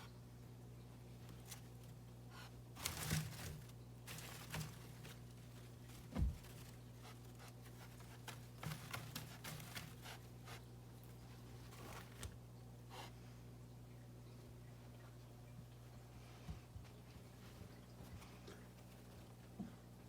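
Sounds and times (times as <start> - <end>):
steady low hum: 0.0 - 20.0
scrabbling and rustling: 1.1 - 12.4, 17.1 - 19.6.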